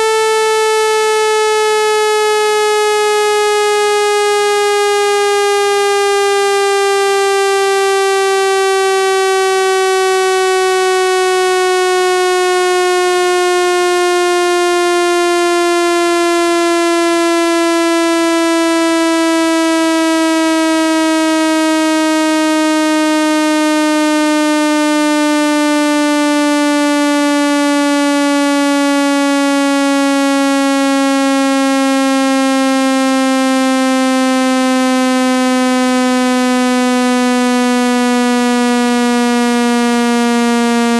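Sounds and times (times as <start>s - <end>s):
buzzy electronic tone gliding down: 33.7s - 40.9s.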